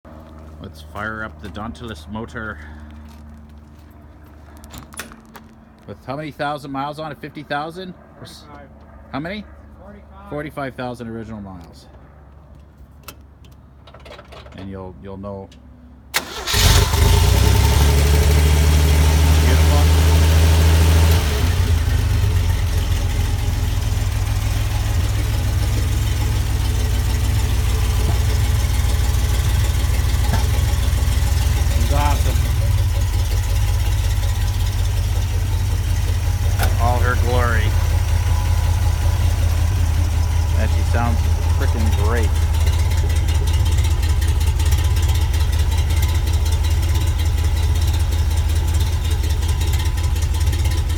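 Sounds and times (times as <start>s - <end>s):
car engine idling: 16.2s - 50.9s.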